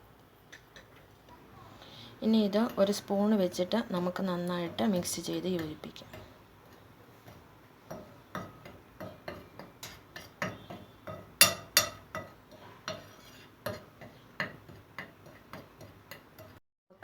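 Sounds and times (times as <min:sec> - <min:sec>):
spoon clinking against plate: 0:07.3 - 0:16.6.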